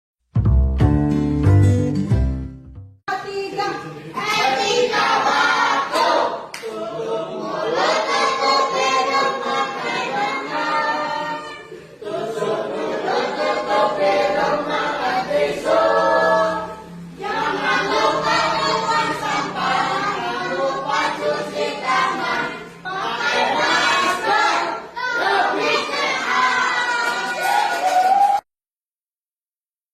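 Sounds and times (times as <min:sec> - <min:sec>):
group of voices singing: 0:03.5 - 0:27.6.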